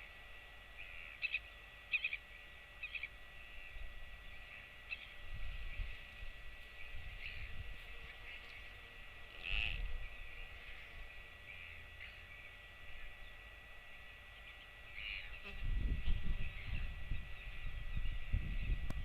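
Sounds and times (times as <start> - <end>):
steady high hiss: 0.0 - 19.0
bird calls: 0.7 - 15.5, 16.3 - 19.0
wind rumbling on microphone: 5.2 - 8.2, 15.5 - 19.0.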